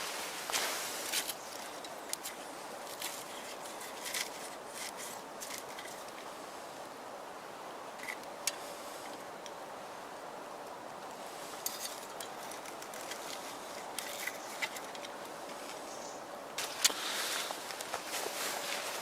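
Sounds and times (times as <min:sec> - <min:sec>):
twig fire hissing: 0:16.6 - 0:19.0.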